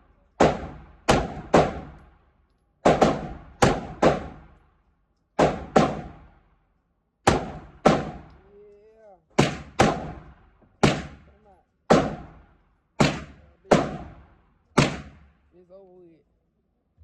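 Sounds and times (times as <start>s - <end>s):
pistol shots: 0.4s - 2.2s, 2.8s - 4.6s, 5.4s - 6.4s, 7.2s - 8.4s, 9.4s - 11.3s, 11.9s - 15.4s.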